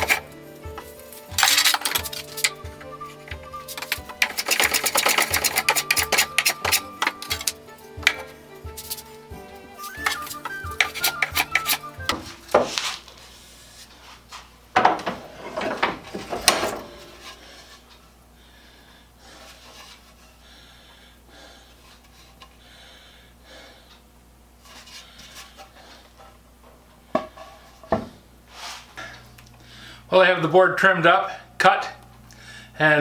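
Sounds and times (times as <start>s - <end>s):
hand plane scraping wood: 0.0s - 13.8s
wood rubbing and handling: 0.0s - 18.0s.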